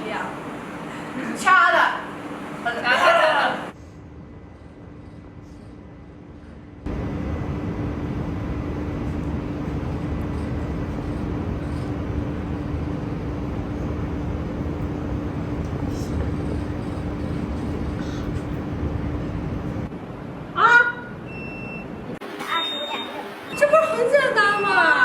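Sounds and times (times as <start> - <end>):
low rumbling hum: 3.6 - 21.4.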